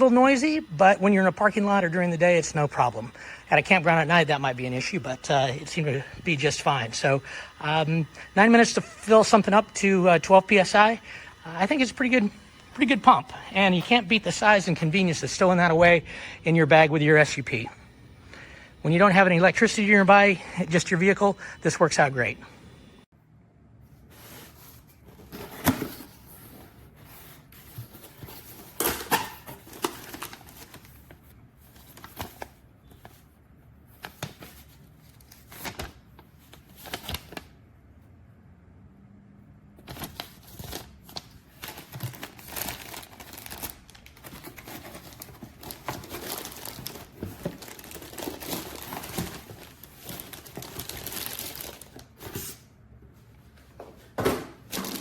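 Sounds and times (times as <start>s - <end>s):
gear crinkling and rustling: 39.9s - 52.5s.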